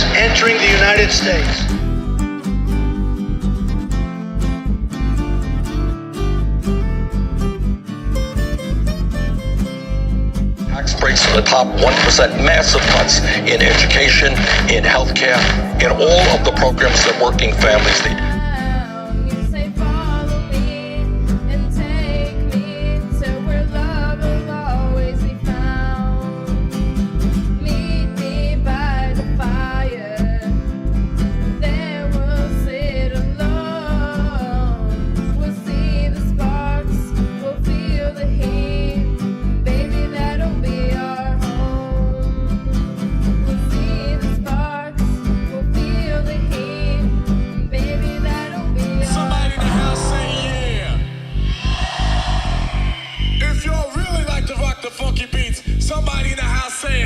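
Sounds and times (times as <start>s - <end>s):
person singing: 0.0s - 1.8s, 10.7s - 26.7s, 47.7s - 55.4s
steady music beat: 0.0s - 2.2s, 2.9s - 9.2s, 10.8s - 18.4s, 49.6s - 54.6s
plucked guitar: 0.0s - 56.3s.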